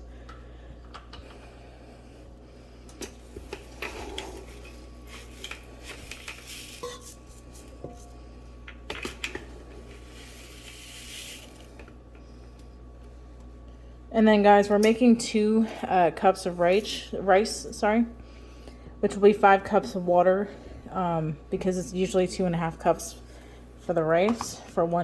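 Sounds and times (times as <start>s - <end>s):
clinking pots and dishes: 6.8s - 7.1s.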